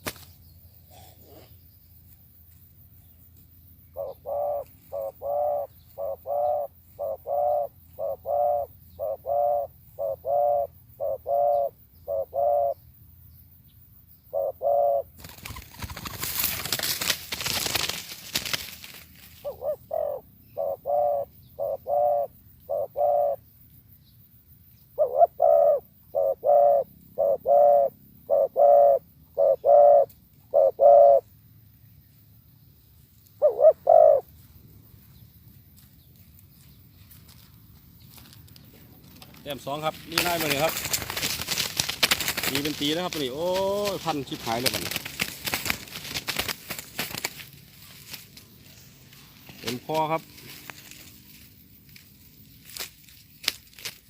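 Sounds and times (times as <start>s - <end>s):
dove cooing: 3.9s - 12.8s, 14.3s - 16.7s, 19.3s - 23.4s, 24.9s - 31.3s, 33.4s - 34.4s, 38.7s - 51.1s.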